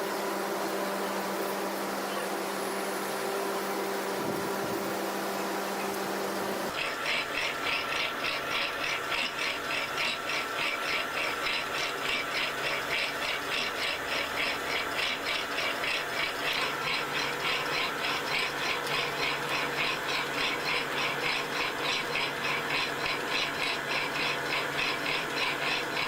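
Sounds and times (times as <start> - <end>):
machine squeaking and clicking: 6.7 - 26.0.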